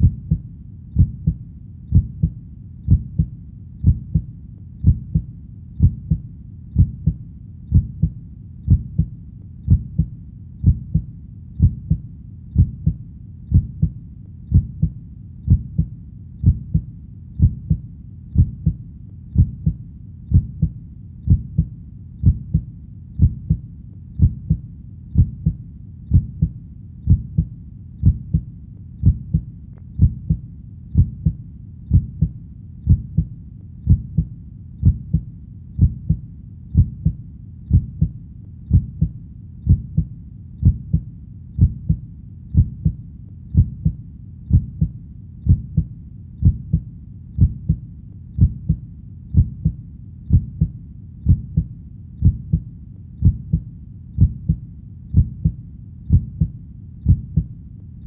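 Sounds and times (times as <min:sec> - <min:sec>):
faint low rumble: 0:00.0 - 0:58.0
heartbeat: 0:00.0 - 0:58.0.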